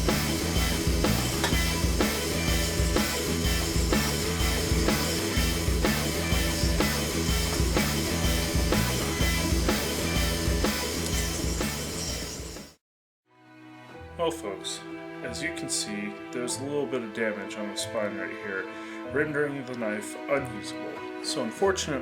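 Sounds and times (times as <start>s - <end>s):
rock music with drums and guitar: 0.0s - 12.8s.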